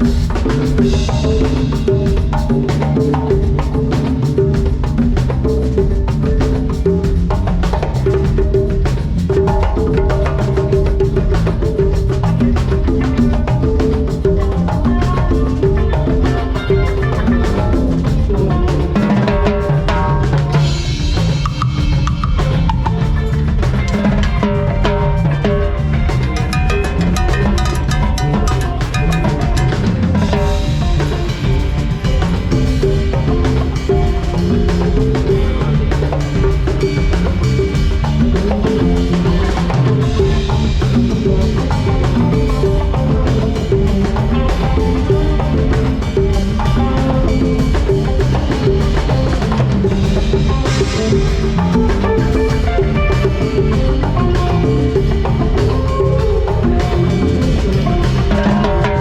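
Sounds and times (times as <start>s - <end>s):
band playing salsa music: 0.0s - 59.0s
bass line: 0.0s - 59.0s
drum kit beat: 0.0s - 59.0s.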